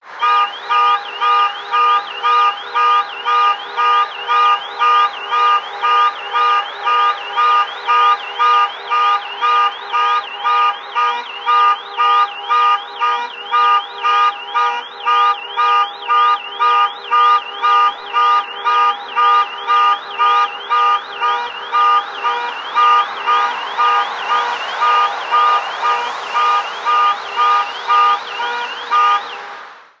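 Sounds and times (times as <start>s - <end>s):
car alarm blaring: 0.0s - 29.6s.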